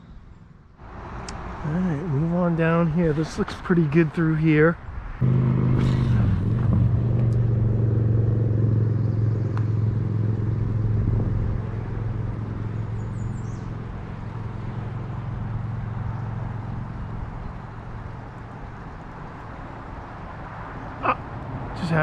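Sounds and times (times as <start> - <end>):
vehicle engine humming: 0.8 - 22.0.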